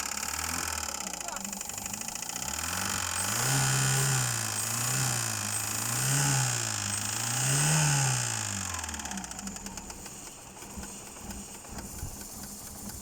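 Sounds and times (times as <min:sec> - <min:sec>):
car engine revving: 0:00.0 - 0:10.1
engine knocking: 0:00.0 - 0:13.0.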